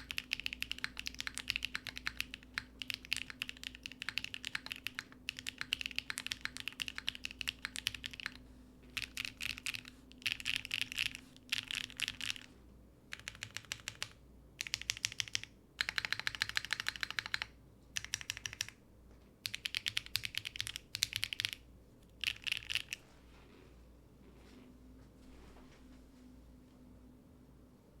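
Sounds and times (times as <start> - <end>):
typing on mechanical keyboard: 0.0 - 12.5, 13.1 - 18.8, 19.4 - 21.6, 22.2 - 23.0.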